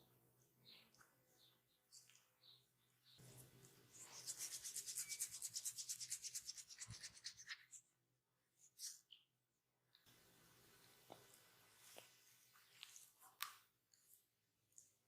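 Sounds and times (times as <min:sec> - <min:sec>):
rhythmic massage rubbing: 0:04.0 - 0:07.5.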